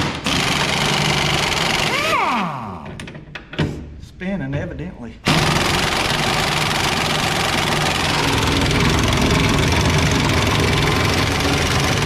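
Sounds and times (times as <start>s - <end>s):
impact wrench hammering: 5.3s - 12.0s.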